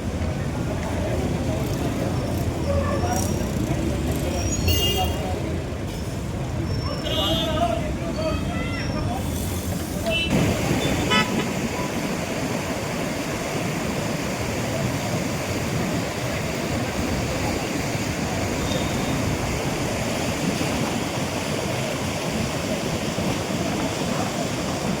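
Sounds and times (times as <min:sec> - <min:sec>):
fast-moving floodwater rushing: 0:00.0 - 0:25.0.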